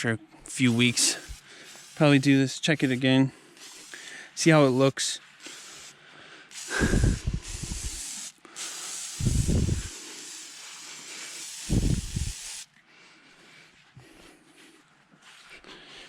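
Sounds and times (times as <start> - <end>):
aerosol can spraying: 0.5 - 12.7.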